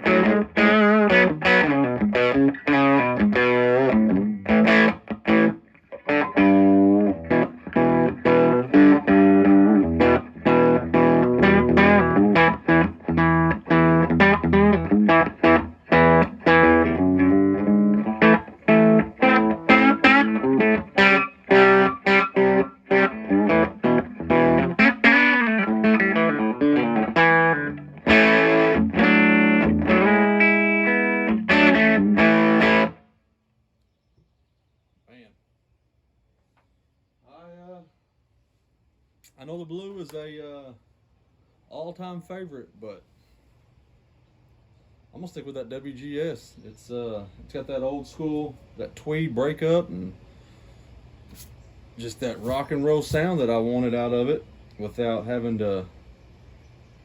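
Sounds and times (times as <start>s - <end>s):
distorted electric guitar chords and riffs: 0.0s - 33.0s.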